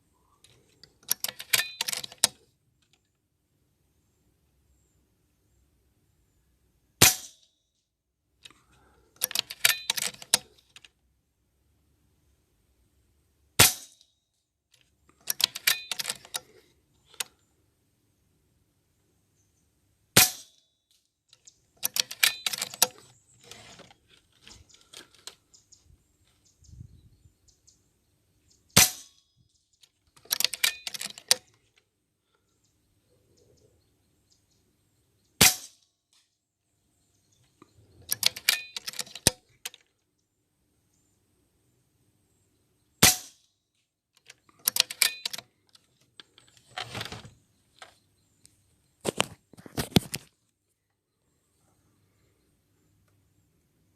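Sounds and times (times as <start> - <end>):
metallic clicks and clacks: 0.4 - 2.9, 9.2 - 10.9, 14.7 - 17.3, 21.3 - 25.4, 29.9 - 31.6, 38.0 - 39.9, 44.2 - 47.1.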